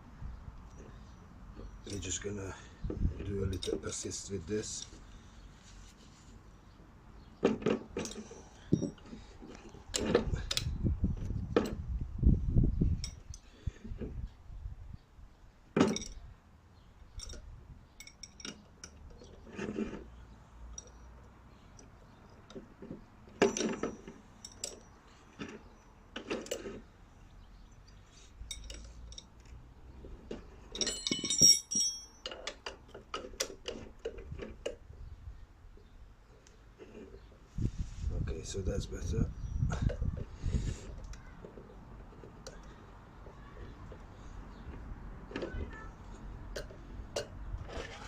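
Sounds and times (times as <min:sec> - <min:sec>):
metal tools clinking: 0:01.6 - 0:02.4, 0:03.2 - 0:05.0, 0:07.6 - 0:09.2, 0:15.8 - 0:16.2, 0:17.1 - 0:20.0, 0:20.7 - 0:22.5, 0:23.3 - 0:26.8, 0:27.6 - 0:29.6, 0:30.3 - 0:33.3
handling noise: 0:30.1 - 0:34.8.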